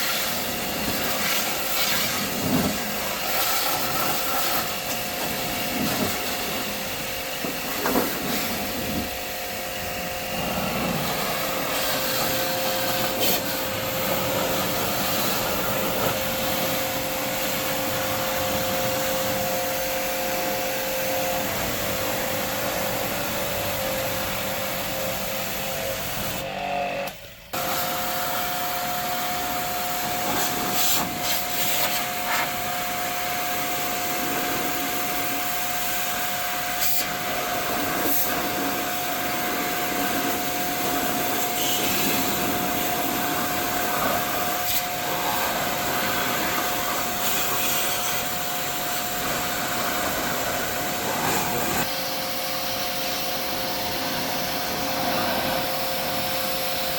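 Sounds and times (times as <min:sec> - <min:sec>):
electric motor whining: 0:41.6 - 0:51.9.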